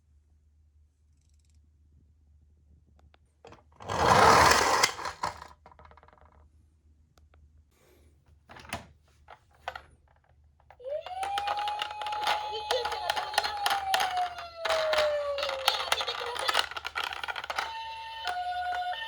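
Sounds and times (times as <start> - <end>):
toy cars clattering on cardboard: 3.5 - 6.4, 8.5 - 19.0
toy electronic siren: 10.9 - 19.0.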